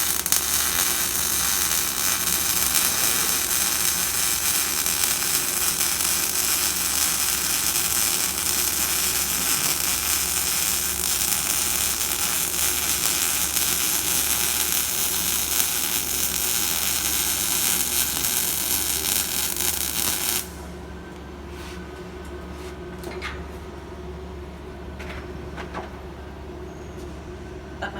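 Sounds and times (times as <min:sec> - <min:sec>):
welding arc sizzling: 0:00.0 - 0:20.6
low machine hum: 0:00.0 - 0:27.9.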